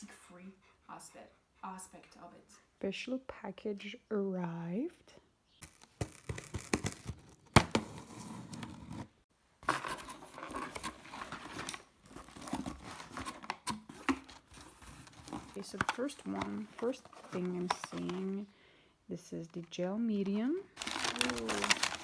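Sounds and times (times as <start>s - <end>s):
packaging tearing and crinkling: 5.6s - 8.3s, 20.8s - 22.0s.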